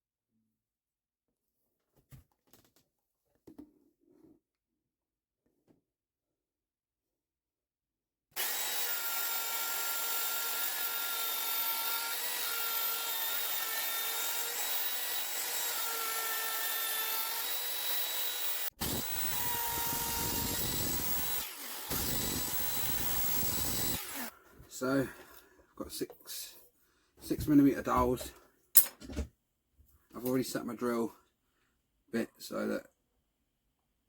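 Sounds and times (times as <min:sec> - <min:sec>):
electric power tool whining: 0:08.4 - 0:24.3.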